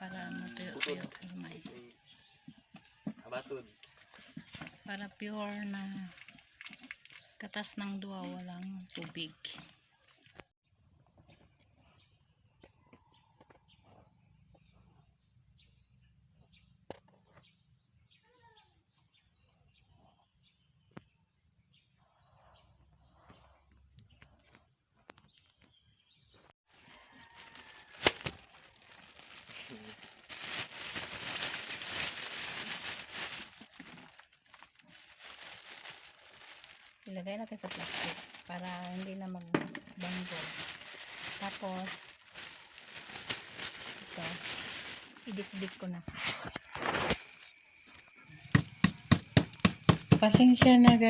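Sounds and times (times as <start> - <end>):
plastic bag rustling: 26.7 - 47.3.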